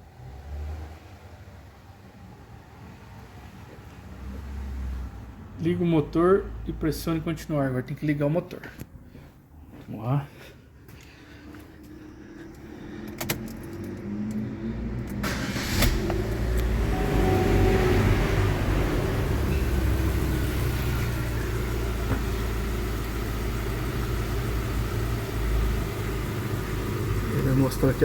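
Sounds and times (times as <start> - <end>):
engine cranking and idling: 10.9 - 28.0.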